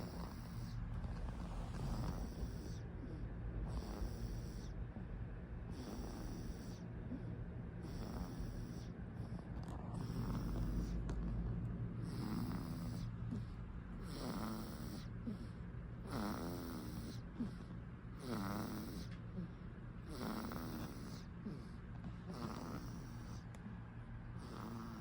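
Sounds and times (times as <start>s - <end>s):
baby snoring: 0.0s - 5.0s, 5.7s - 11.1s, 12.0s - 23.5s, 24.4s - 25.0s
steady low hum: 0.0s - 25.0s.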